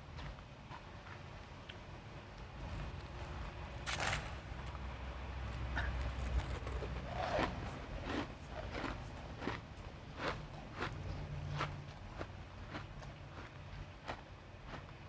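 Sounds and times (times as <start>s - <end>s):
ice crunching while chewed: 5.5s - 15.0s.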